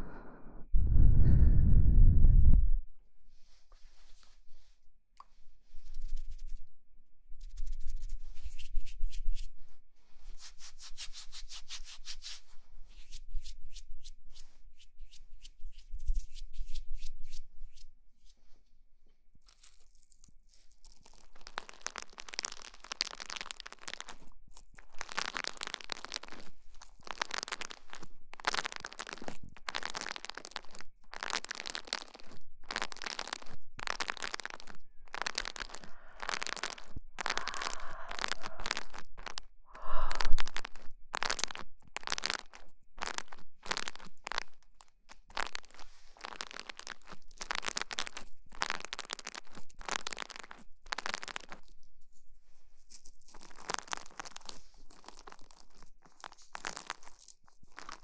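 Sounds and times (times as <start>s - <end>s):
scratchy noise bursts: 35.1s - 40.8s.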